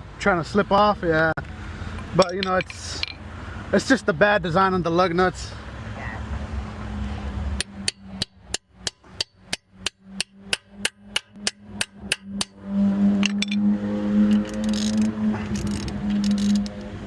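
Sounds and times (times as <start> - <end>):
hammer striking metal: 7.6 - 12.6.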